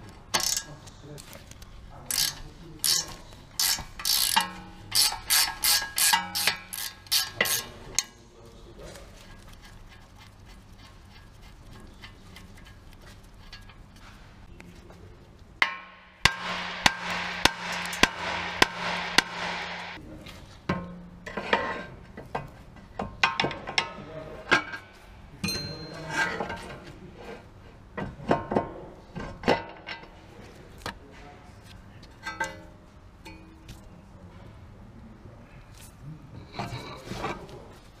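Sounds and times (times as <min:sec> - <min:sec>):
metallic clanks of tools: 0:00.3 - 0:01.3, 0:02.1 - 0:08.3, 0:15.6 - 0:20.0, 0:20.7 - 0:26.9, 0:32.1 - 0:33.8
power tool running with knocks: 0:16.3 - 0:20.0.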